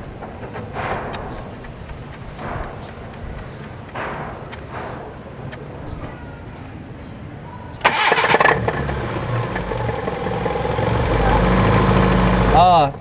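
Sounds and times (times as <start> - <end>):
car starter cranking: 7.8 - 12.8
car engine running: 7.8 - 12.9.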